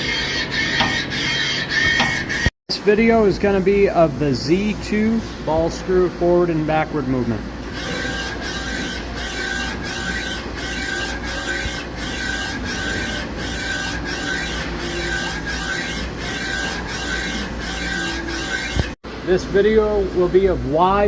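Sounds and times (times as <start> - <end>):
machine whirring with high whine: 0.0 - 21.0.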